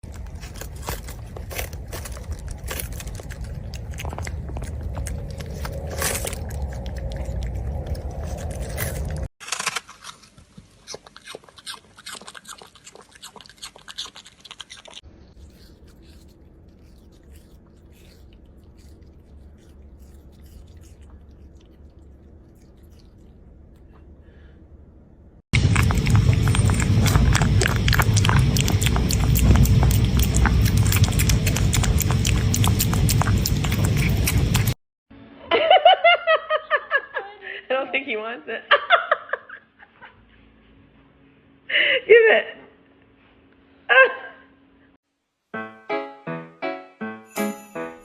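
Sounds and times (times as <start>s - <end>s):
puppies crunching food: 0.0s - 24.1s, 25.6s - 34.8s.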